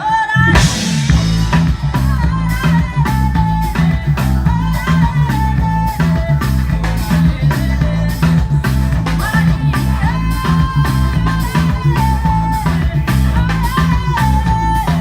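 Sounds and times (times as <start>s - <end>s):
bass line: 0.3s - 15.0s
lead guitar melody: 0.4s - 7.0s
drum kit beat: 0.4s - 15.0s.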